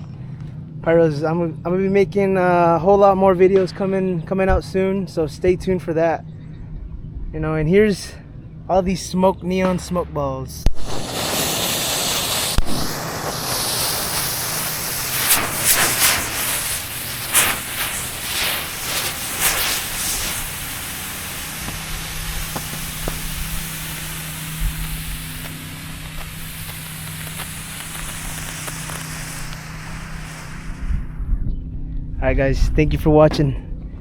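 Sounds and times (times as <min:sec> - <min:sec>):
low steady hum: 0:00.0 - 0:34.0
smoke balls hissing and sputtering: 0:07.6 - 0:31.4.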